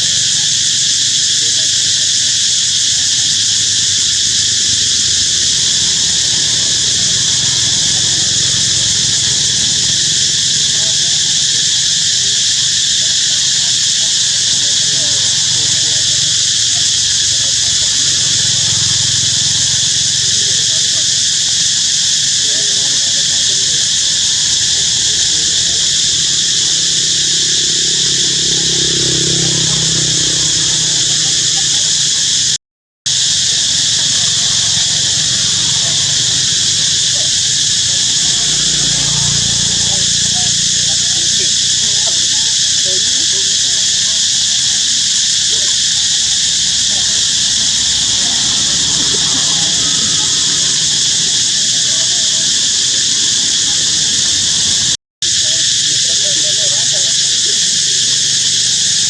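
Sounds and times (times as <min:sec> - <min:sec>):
insect chorus buzzing: 0:00.0 - 0:59.0.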